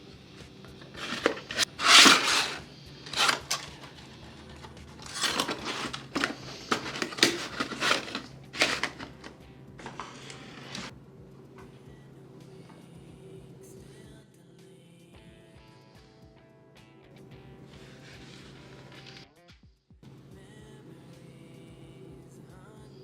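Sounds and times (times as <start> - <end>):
packaging scraping and tearing: 0.7 - 10.9.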